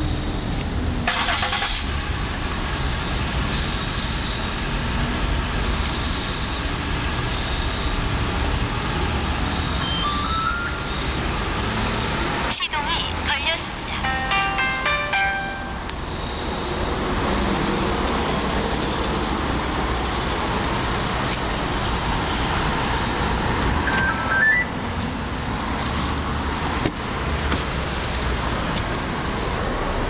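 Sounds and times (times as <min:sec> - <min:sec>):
rising electronic chirp beeps: 0:09.8 - 0:11.2, 0:23.9 - 0:24.8.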